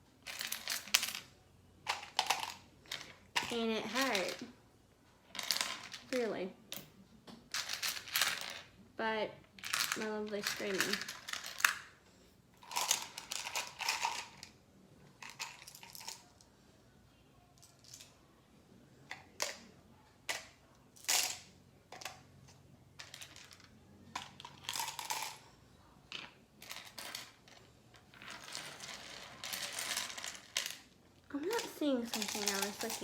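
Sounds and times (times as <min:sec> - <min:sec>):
small charms clicking and rattling: 0:28.2 - 0:33.0.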